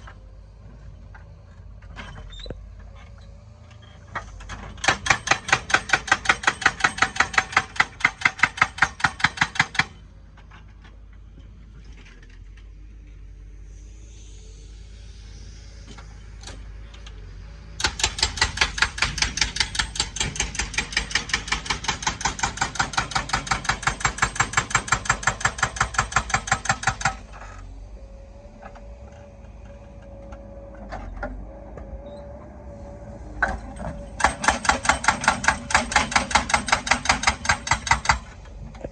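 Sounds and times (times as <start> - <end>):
low engine rumble: 0.0 - 5.6, 9.9 - 38.9
hydraulic breaker hammering: 4.8 - 10.0, 17.8 - 27.3, 33.4 - 38.4.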